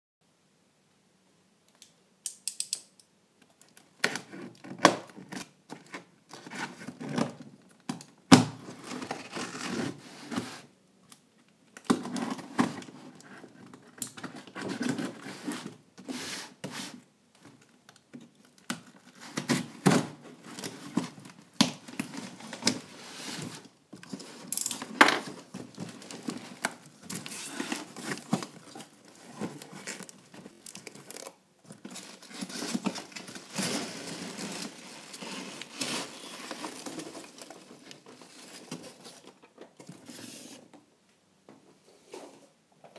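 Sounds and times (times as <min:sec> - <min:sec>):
packaging rustling and tearing: 0:08.6 - 0:10.6, 0:18.3 - 0:40.2.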